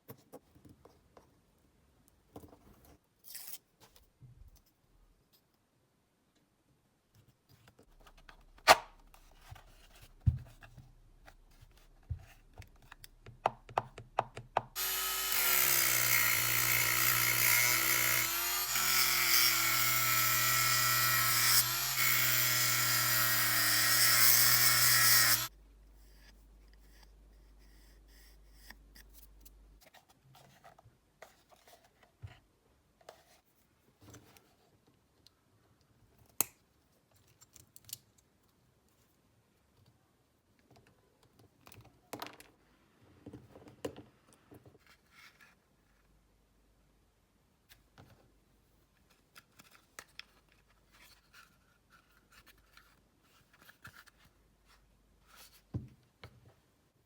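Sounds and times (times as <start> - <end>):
cordless drill motor running: 14.8 - 25.5.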